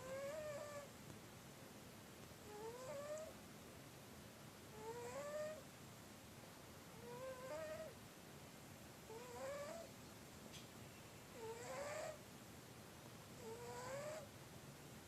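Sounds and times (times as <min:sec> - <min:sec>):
cat snoring: 0:00.0 - 0:00.9, 0:02.4 - 0:03.3, 0:04.7 - 0:05.6, 0:07.0 - 0:08.0, 0:09.1 - 0:09.9, 0:11.4 - 0:12.2, 0:13.4 - 0:14.3.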